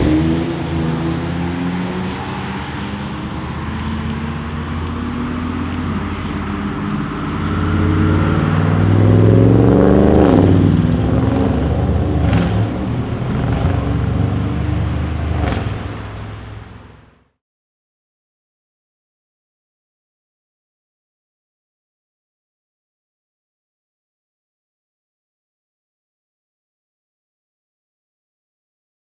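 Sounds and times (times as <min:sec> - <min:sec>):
deep engine rumble: 0:00.0 - 0:17.2
sharp exhaust crackles: 0:00.0 - 0:17.2.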